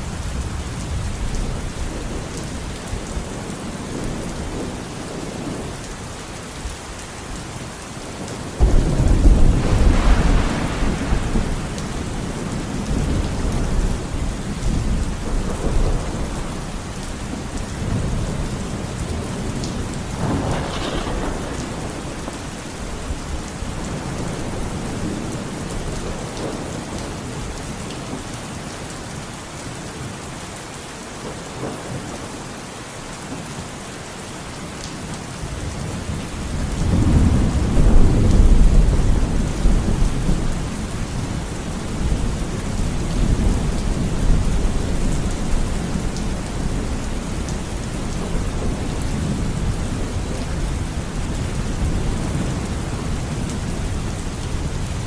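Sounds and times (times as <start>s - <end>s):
steady rain falling: 0.0s - 55.0s
rolling thunder: 8.6s - 26.9s, 36.4s - 55.0s.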